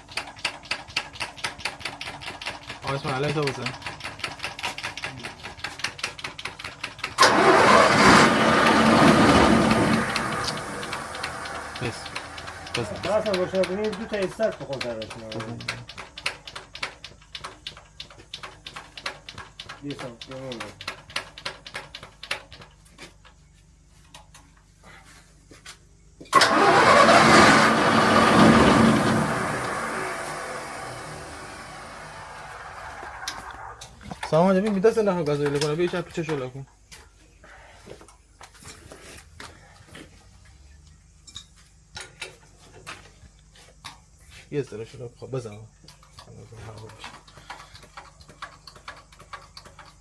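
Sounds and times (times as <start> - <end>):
engine starter cranking: 0.0 - 22.6, 26.3 - 36.5, 45.9 - 50.0
engine running loudly: 7.2 - 13.4.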